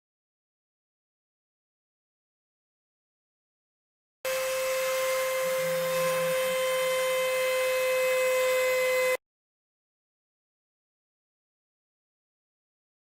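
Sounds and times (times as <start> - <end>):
stepper motors whining: 4.3 - 9.2.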